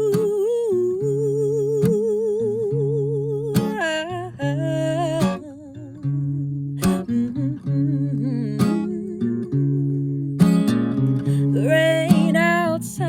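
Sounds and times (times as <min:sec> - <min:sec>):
person humming melody: 0:00.0 - 0:10.4
acoustic guitar strumming: 0:00.0 - 0:13.0.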